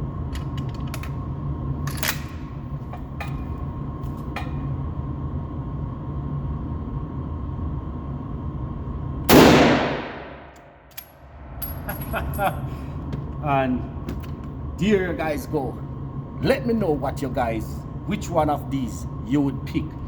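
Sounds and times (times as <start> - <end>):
steady low rumble: 0.0 - 20.0
rifle shot: 9.3 - 10.6.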